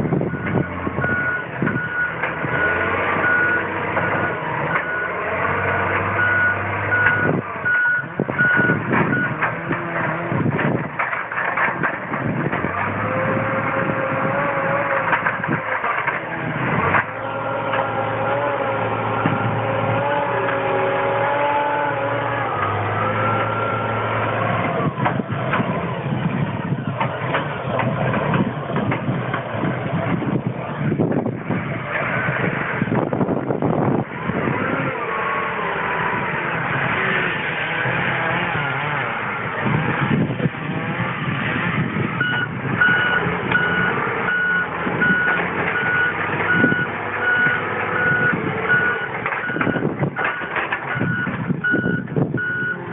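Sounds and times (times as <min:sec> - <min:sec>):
wheel loader diesel engine: 0:00.0 - 0:52.9
reversing alarm beeping: 0:00.2 - 0:05.2, 0:06.1 - 0:09.4, 0:42.2 - 0:52.8.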